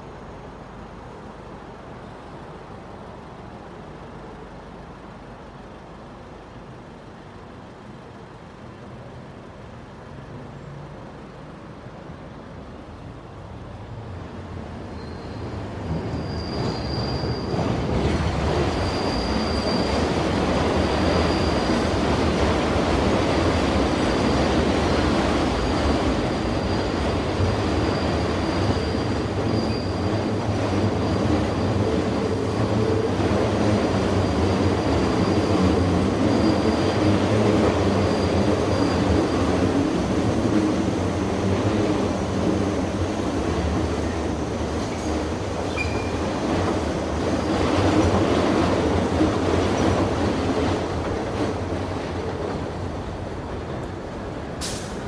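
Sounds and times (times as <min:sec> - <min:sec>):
subway train rumble: 0:00.0 - 0:55.0
high wheel squeal: 0:14.8 - 0:48.2.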